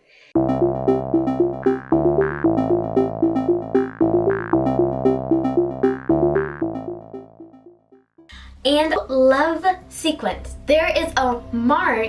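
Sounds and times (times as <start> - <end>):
upbeat synthesizer music: 0.4 - 8.1.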